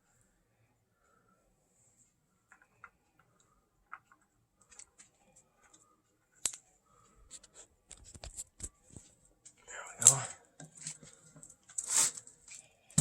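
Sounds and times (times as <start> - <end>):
small parts clicking and knocking: 2.5 - 5.8, 6.4 - 6.6.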